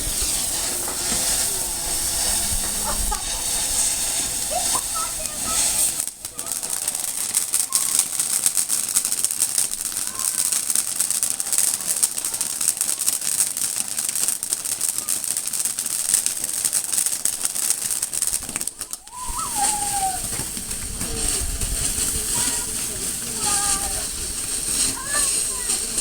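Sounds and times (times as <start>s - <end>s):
high hiss: 0.0s - 10.8s, 17.3s - 26.0s
firework fountain crackling: 0.0s - 26.0s.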